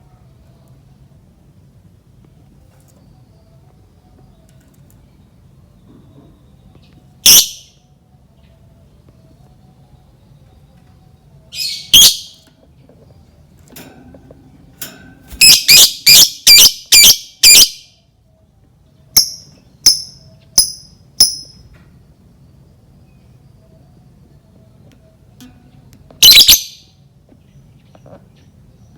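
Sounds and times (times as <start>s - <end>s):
bird shrill calls: 7.3s - 7.7s, 11.6s - 12.4s, 15.4s - 17.9s, 26.2s - 26.9s.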